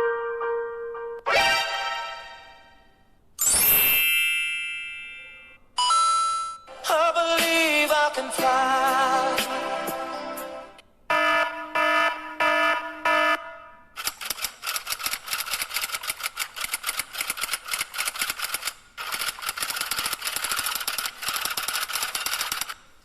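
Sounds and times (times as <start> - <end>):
pulsing electronic alarm beep: 11.1 - 13.6
rapid repeating clicks or shots: 14.0 - 22.8.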